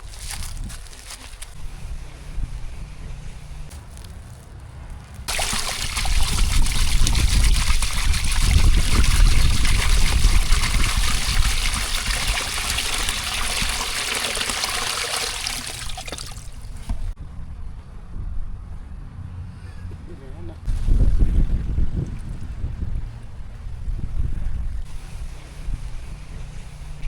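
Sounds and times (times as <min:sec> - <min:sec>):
water pouring in trickling stream: 0:00.0 - 0:01.6, 0:05.3 - 0:17.2.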